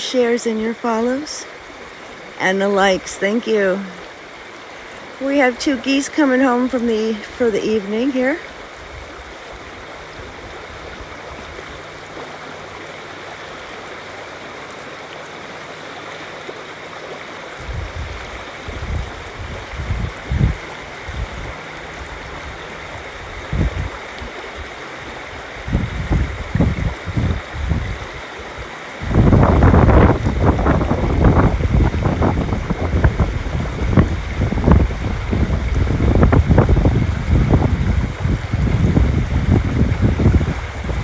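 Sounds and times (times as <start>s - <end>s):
river water rushing: 0.0s - 41.0s
wind buffeting microphone: 17.6s - 41.0s.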